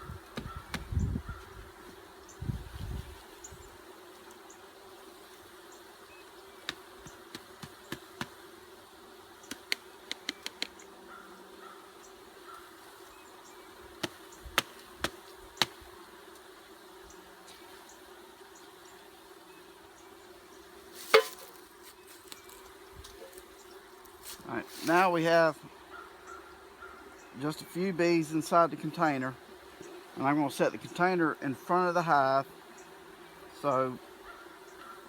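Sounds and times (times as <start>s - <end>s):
honeybees buzzing: 0.0s - 35.0s
sharp clicks and taps: 9.5s - 10.8s.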